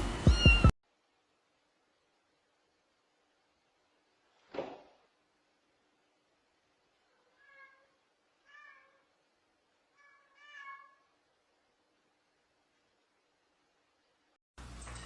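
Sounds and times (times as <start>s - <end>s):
cat meowing faintly: 7.0s - 9.2s, 9.9s - 11.2s.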